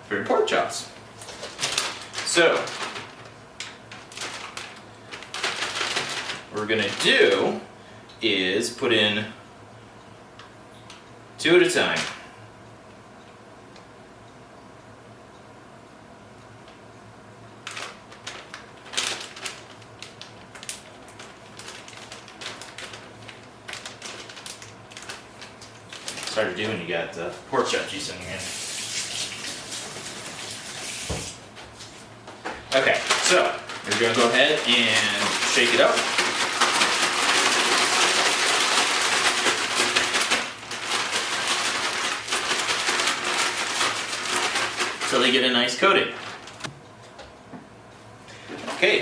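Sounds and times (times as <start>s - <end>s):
plastic bag crinkling: 1.1s - 7.6s, 17.6s - 31.1s, 32.6s - 46.7s.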